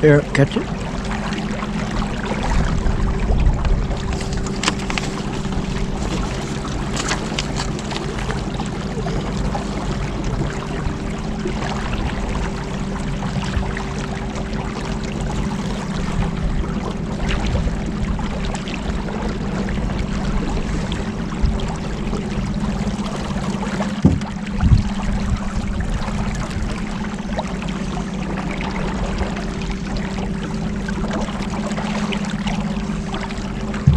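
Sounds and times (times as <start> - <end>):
water rushing: 0.0 - 33.9
wind: 0.0 - 33.9
light knocks: 24.0 - 24.3.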